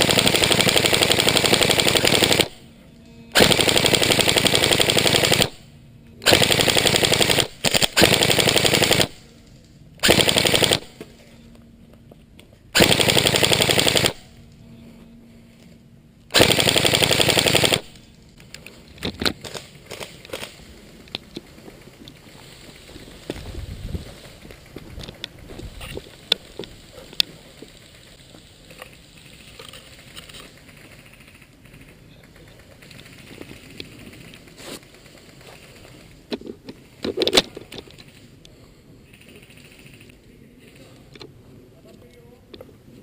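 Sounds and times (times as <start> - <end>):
airsoft gun firing bursts: 0.0 - 2.6, 3.4 - 5.6, 6.2 - 9.2, 10.0 - 11.0, 12.8 - 14.3, 16.3 - 18.0.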